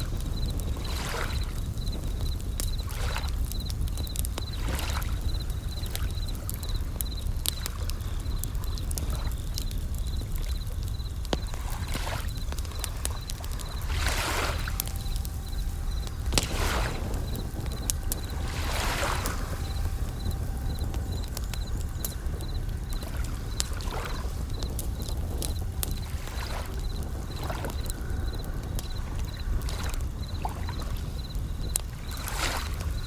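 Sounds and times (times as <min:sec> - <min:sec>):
campfire crackling and popping: 0:00.0 - 0:33.0
crickets chirping: 0:00.0 - 0:33.0
waves washing: 0:10.4 - 0:31.1.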